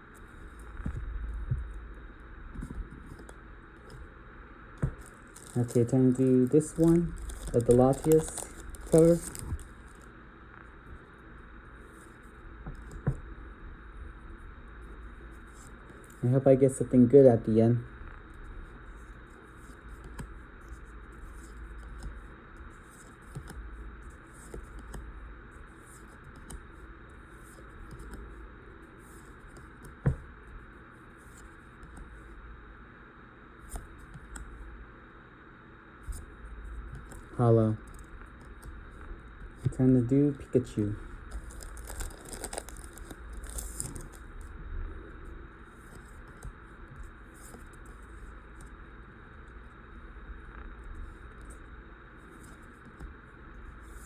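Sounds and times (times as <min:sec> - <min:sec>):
cards rustling and clicking: 0:04.8 - 0:10.1, 0:36.9 - 0:38.7, 0:40.7 - 0:44.3.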